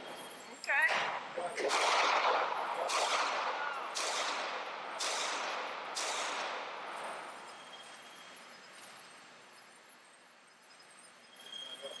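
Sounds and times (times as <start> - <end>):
pistol shots ringing: 0.9 - 7.5.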